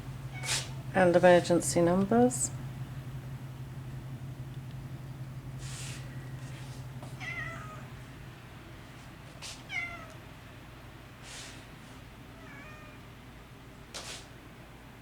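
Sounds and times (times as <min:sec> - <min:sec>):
cat meowing: 0:07.2 - 0:07.9, 0:09.7 - 0:10.2, 0:12.3 - 0:13.1.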